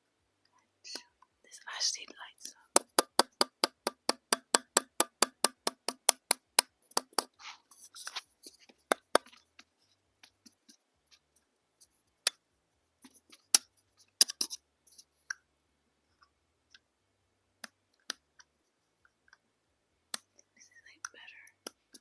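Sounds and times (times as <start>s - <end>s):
object clicking and tapping: 2.7s - 7.4s, 8.0s - 11.2s, 13.0s - 14.6s.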